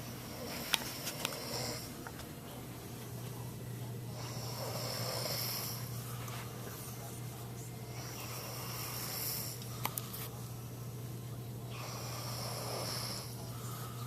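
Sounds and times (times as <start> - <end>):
steady low hum: 0.0 - 14.0
person snoring: 4.2 - 5.9, 11.7 - 13.4.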